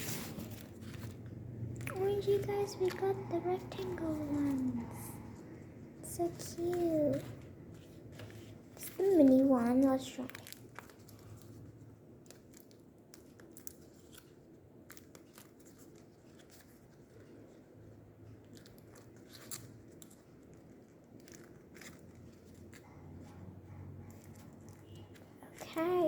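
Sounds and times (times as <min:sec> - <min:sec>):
fidget toy clicks and crinkles: 0:00.4 - 0:23.3, 0:24.0 - 0:26.0.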